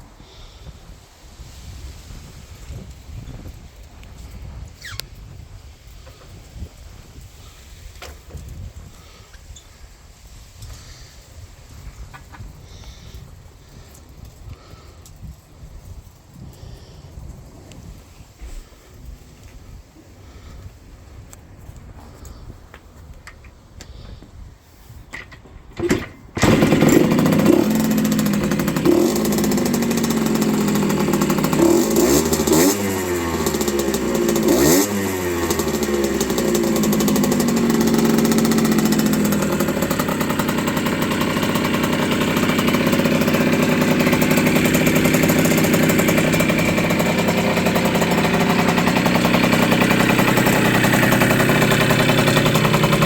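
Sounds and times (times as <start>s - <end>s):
two-stroke engine revving: 25.8s - 53.0s.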